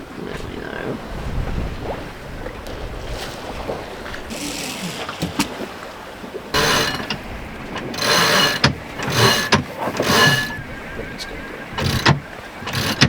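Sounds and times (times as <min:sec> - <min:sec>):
water noise: 0:00.0 - 0:13.0
wind: 0:00.0 - 0:13.0
winch being cranked: 0:04.3 - 0:05.6, 0:06.6 - 0:13.0.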